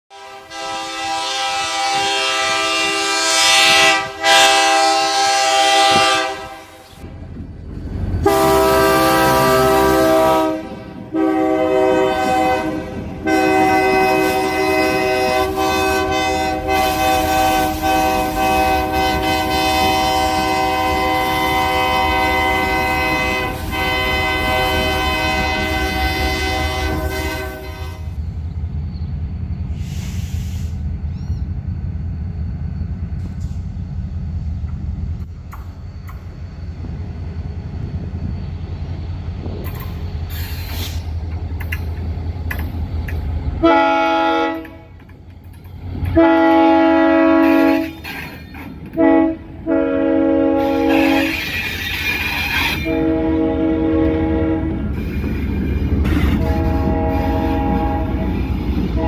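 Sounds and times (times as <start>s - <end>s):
locomotive air horn blasts: 0.1s - 7.0s, 8.2s - 28.2s, 43.6s - 45.0s, 46.0s - 48.2s, 48.9s - 51.6s, 52.5s - 55.1s, 56.0s - 59.0s
low rumble of train passing: 0.1s - 59.0s.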